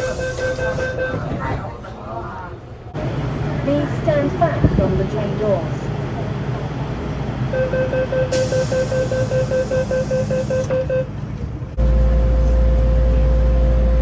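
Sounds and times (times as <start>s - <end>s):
rapid warning beeps: 0.0s - 1.2s, 7.6s - 11.1s
continuous warning tone: 0.0s - 1.6s, 7.4s - 14.0s
train low rumble: 0.0s - 14.0s
hiss: 8.4s - 10.4s.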